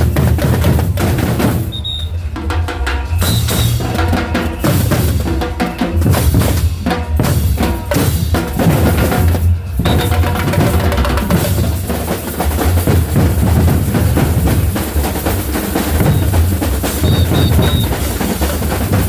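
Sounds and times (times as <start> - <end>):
samba percussion ensemble: 0.0 - 19.0
snare drum strokes: 3.0 - 6.7, 7.7 - 19.0
deep bass drums: 6.0 - 19.0.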